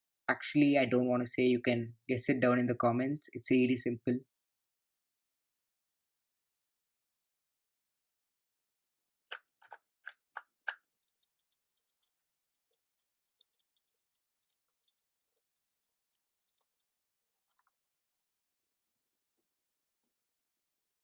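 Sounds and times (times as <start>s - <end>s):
speed cube layers clicking: 10.7s - 16.8s
faint rapid ticking: 11.0s - 16.9s.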